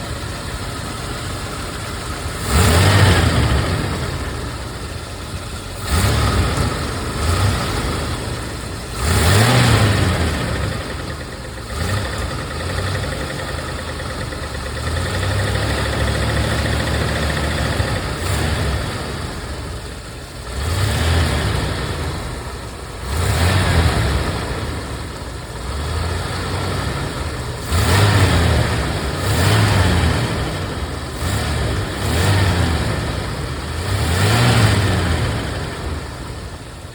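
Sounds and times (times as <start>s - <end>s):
car engine revving with a rattle: 0.0s - 36.9s.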